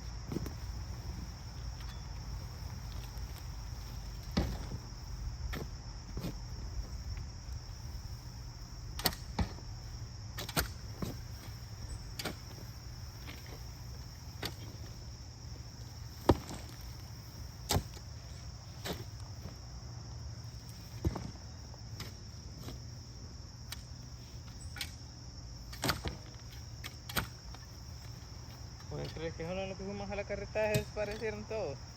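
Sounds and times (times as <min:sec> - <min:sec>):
crickets chirping: 0:00.0 - 0:31.9
digging tools striking soil: 0:00.3 - 0:07.2, 0:08.9 - 0:15.0, 0:16.1 - 0:18.1, 0:18.7 - 0:19.4, 0:20.6 - 0:23.0, 0:25.7 - 0:29.3, 0:30.6 - 0:31.4.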